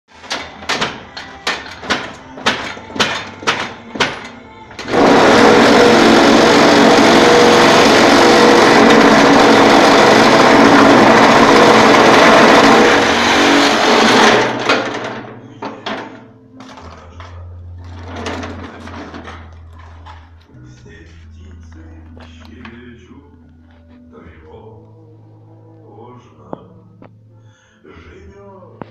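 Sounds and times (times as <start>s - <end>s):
machine rattling steadily: 0.1s - 16.2s.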